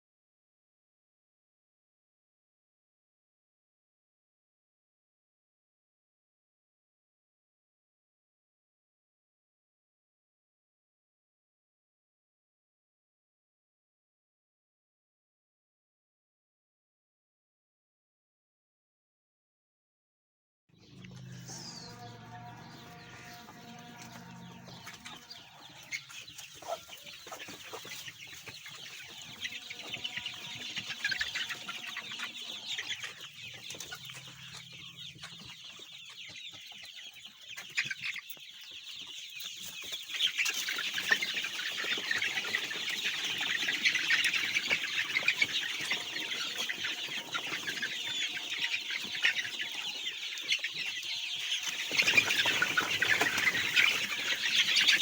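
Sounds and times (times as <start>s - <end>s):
chickens clucking and chirping: 20.7s - 55.0s.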